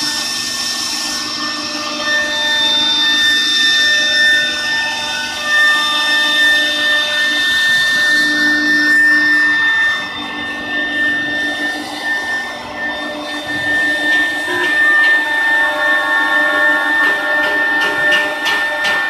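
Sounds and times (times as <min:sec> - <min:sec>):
router spindle motor whine: 0:00.0 - 0:19.0.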